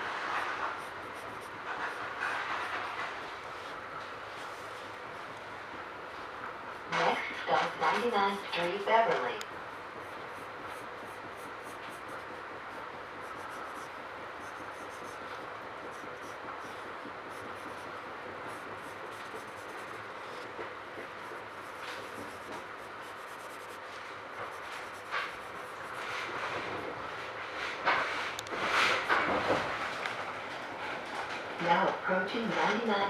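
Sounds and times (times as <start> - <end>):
train car running noise: 0.0 - 23.0, 23.8 - 33.0
pencil scratching on paper: 0.2 - 3.8, 10.0 - 26.4.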